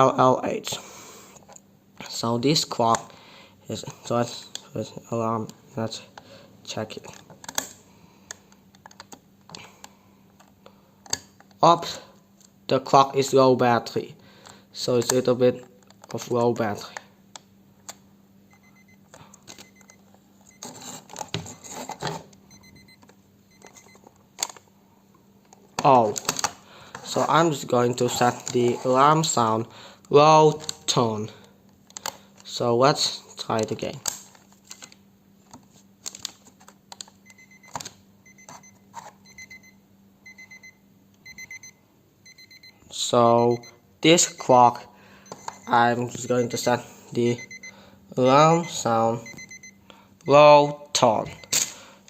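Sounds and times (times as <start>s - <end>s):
person talking: 2.0s - 3.1s, 3.7s - 7.3s, 14.8s - 17.1s, 25.8s - 26.4s, 27.0s - 31.4s, 42.9s - 44.9s, 45.7s - 47.5s, 48.1s - 49.2s, 50.3s - 51.4s
alarm clock beeping: 18.5s - 19.9s, 22.5s - 24.0s, 37.2s - 51.6s.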